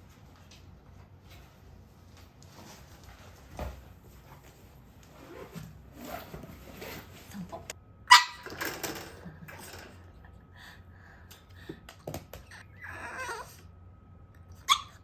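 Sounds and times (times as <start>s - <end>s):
dog barking: 8.1s - 8.5s, 14.6s - 15.0s
dog vocalising softly: 12.4s - 13.6s.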